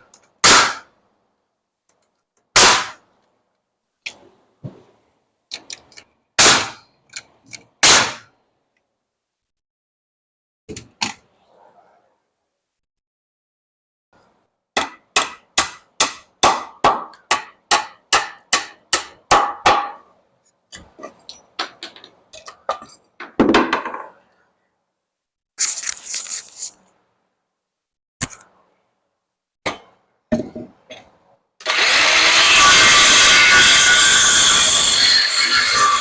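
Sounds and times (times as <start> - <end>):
hammer driving nail into wood: 14.8 - 20.0.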